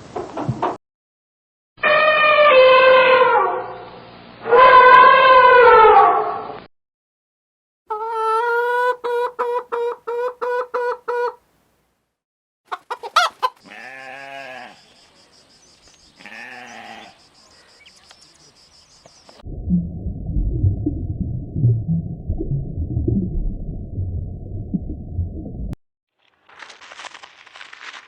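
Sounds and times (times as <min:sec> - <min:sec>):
farm animal calls: 0:12.7 - 0:15.0, 0:16.1 - 0:18.6.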